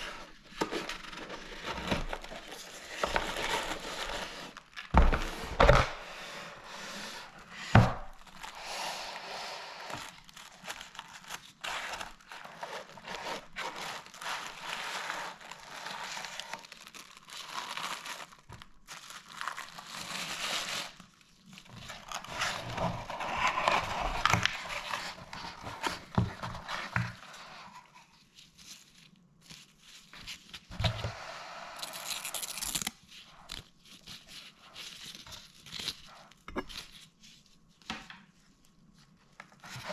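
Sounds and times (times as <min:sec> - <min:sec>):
packaging crinkling and tearing: 0:08.0 - 0:09.2, 0:09.8 - 0:27.8, 0:31.8 - 0:37.7.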